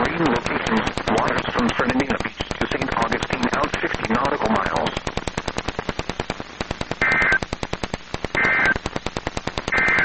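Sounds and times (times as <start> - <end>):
static clicks: 0.0 - 10.0
two-tone data bursts: 6.9 - 7.5, 8.4 - 8.9, 9.7 - 10.0.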